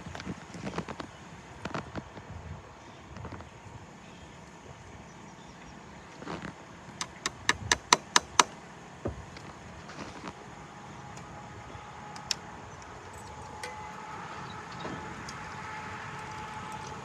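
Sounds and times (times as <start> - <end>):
sharp clicks: 7.0 - 8.5.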